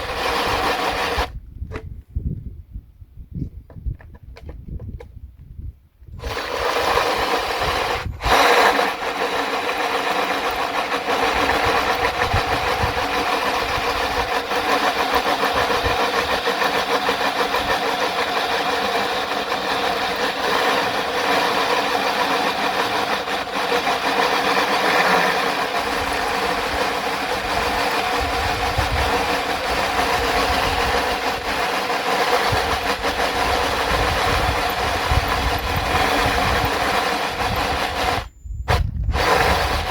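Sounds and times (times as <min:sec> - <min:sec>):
electric drill drilling into metal: 0:00.0 - 0:01.3, 0:06.2 - 0:39.9.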